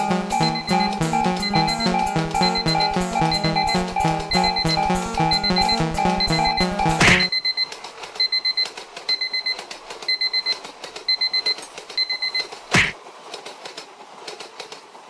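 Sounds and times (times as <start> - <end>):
music: 0.0 - 7.3
electronic alarm beeping: 0.0 - 7.5.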